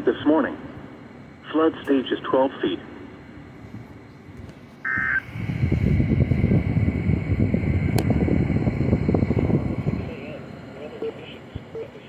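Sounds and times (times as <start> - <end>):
crackling static: 4.8 - 5.3.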